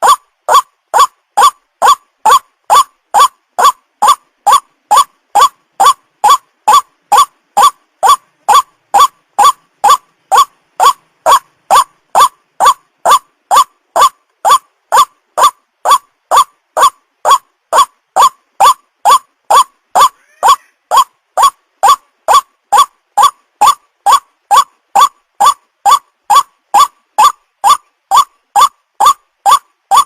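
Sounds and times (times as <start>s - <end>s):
bird lure call: 0.0s - 30.0s
faint bird chirp: 0.0s - 30.0s.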